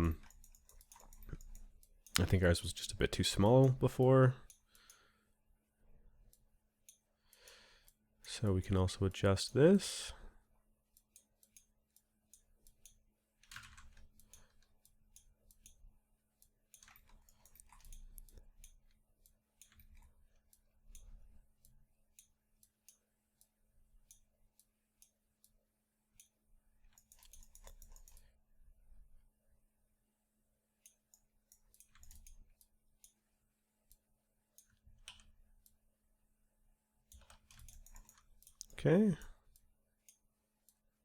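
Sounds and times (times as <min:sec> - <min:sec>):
computer mouse clicks: 0:00.0 - 0:02.4, 0:10.9 - 0:15.8, 0:16.4 - 0:25.6, 0:26.2 - 0:28.4, 0:30.8 - 0:33.2, 0:33.9 - 0:35.8, 0:37.1 - 0:38.8
keyboard clicks: 0:26.9 - 0:28.3, 0:30.9 - 0:32.4.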